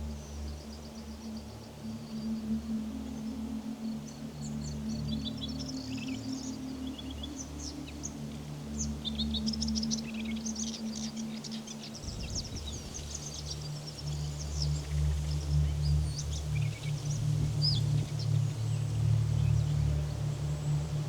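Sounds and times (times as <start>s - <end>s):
low droning background music: 0.0s - 21.0s
small birds chirping: 4.5s - 21.0s.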